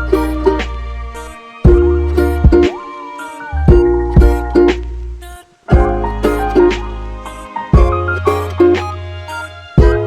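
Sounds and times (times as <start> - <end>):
steady bass and beat: 0.0 - 2.9, 3.5 - 10.0
plucked-string tune: 0.0 - 10.0.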